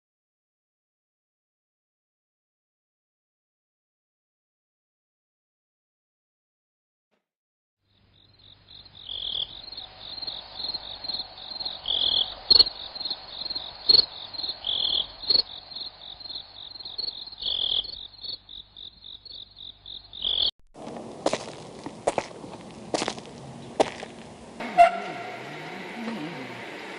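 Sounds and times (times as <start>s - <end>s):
alarm high-pitched pulsing chirp: 8.2s - 20.5s
lower alarm tone: 24.6s - 26.9s.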